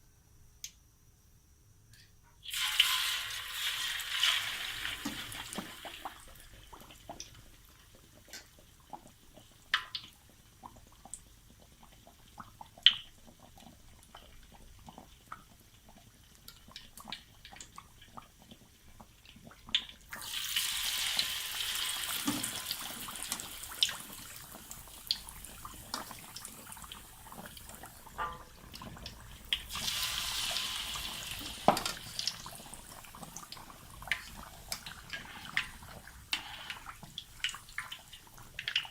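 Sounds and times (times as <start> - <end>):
pork frying in hot oil: 2.4 - 38.9.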